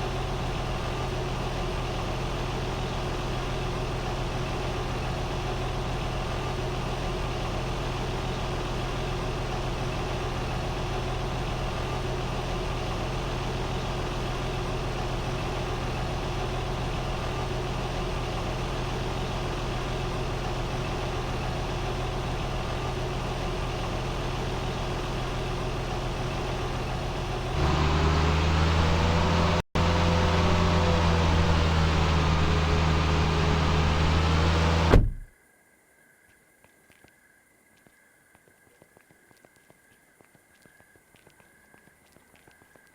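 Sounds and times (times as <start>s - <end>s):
machinery engine running: 12.8s - 35.3s.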